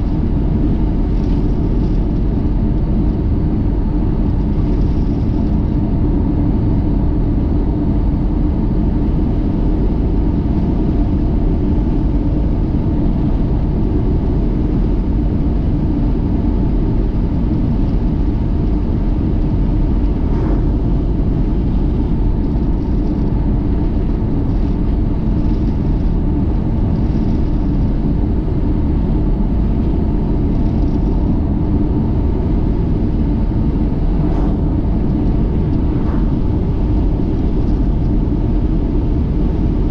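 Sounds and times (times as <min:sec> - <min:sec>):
car driving rumble: 0:16.9 - 0:39.8.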